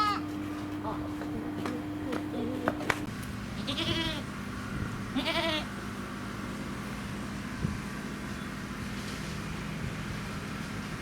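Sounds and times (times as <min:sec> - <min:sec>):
goat bleating: 0:00.0 - 0:00.3, 0:03.6 - 0:04.3, 0:05.1 - 0:05.7.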